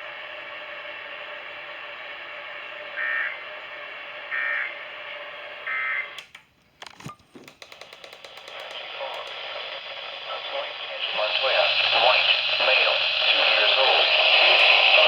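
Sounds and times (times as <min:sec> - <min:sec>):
radio hiss: 0:00.0 - 0:15.0
clicks: 0:06.2 - 0:09.4.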